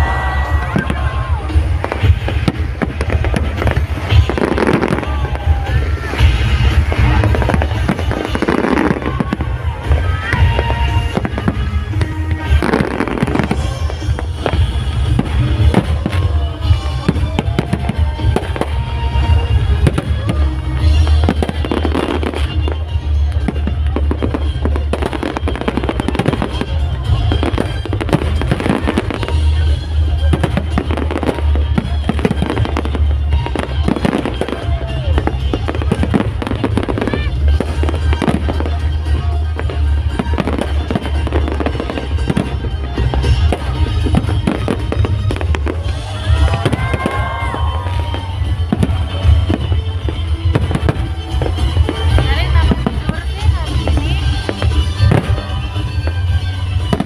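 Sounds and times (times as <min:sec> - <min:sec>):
fireworks bursting: 0:00.0 - 0:57.0
music playing: 0:00.0 - 0:57.0.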